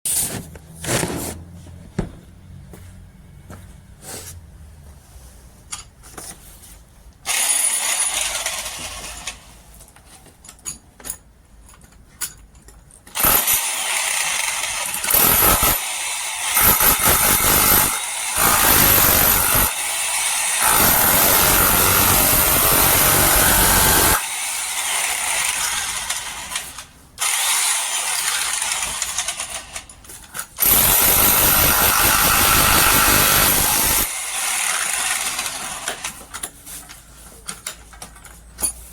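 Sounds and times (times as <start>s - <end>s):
demolition hammer running: 13.2s - 24.2s, 30.6s - 36.1s.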